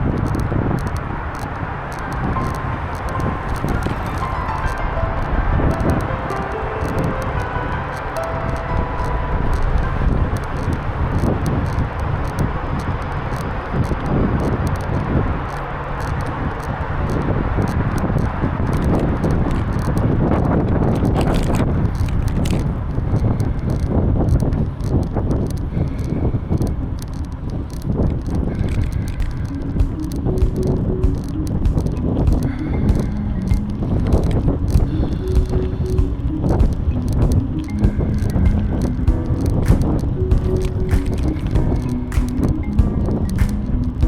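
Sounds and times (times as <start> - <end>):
wind buffeting microphone: 0.0 - 44.0
bicycle rumble on pavement: 10.7 - 44.0.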